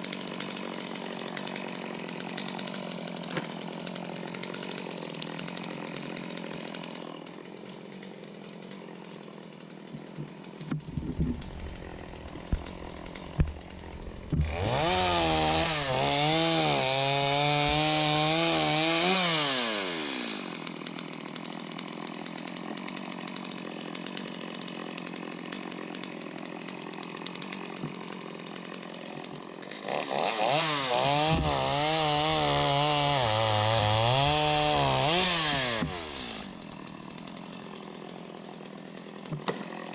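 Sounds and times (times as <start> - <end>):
chainsaw idling and cutting: 0.0 - 39.9
sharp knocks: 10.7 - 14.8.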